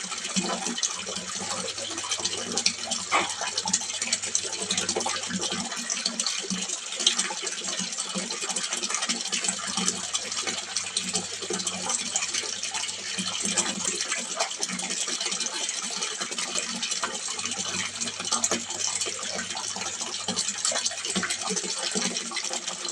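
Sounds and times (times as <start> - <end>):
water splashing into pond: 0.2 - 7.8.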